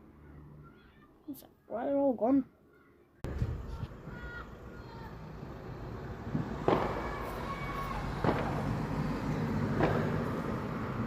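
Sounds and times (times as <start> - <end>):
distant fireworks bangs: 5.4 - 11.0.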